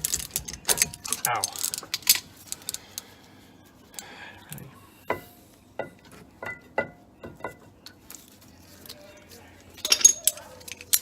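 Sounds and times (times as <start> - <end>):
metal parts clinking: 0.0 - 3.0, 9.6 - 11.0.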